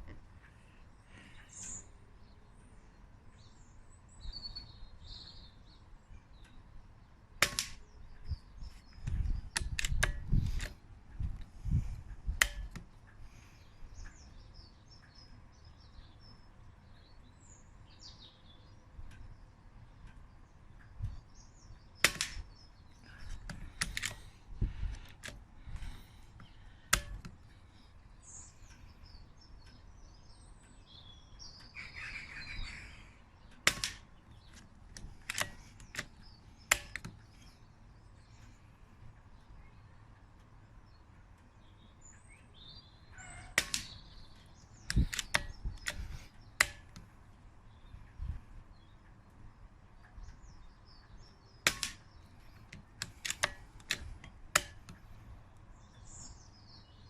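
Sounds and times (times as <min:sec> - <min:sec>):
faint bird calls: 0:00.0 - 0:07.1, 0:11.7 - 0:40.1, 0:41.6 - 0:47.0
sharp clicks and knocks: 0:07.4 - 0:13.2, 0:21.9 - 0:27.6, 0:33.5 - 0:37.6, 0:43.6 - 0:47.2, 0:51.6 - 0:55.6.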